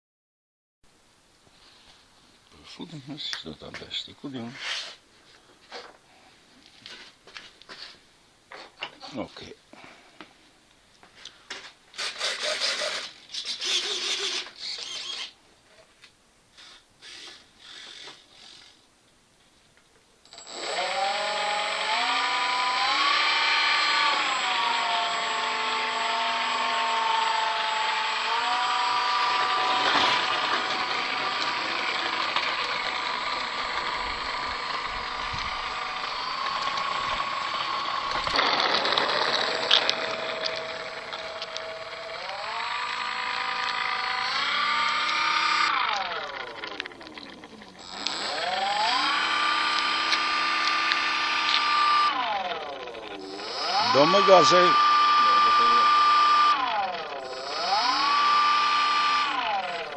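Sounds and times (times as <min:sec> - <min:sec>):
model aeroplane motor running: 0:20.4 - 0:59.9.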